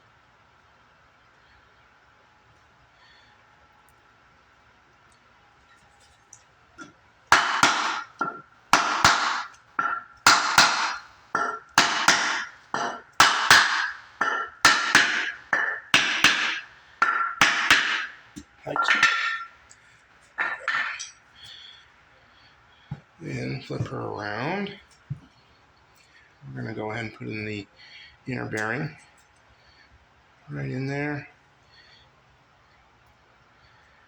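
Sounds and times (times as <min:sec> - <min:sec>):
hammer striking metal: 0:06.8 - 0:19.6, 0:20.4 - 0:21.2.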